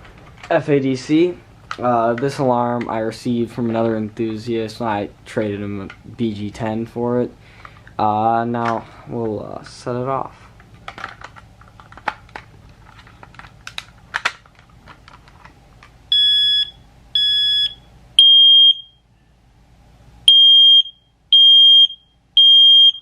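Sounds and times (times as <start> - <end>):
smoke alarm beeping: 16.1 - 19.0, 20.3 - 23.0.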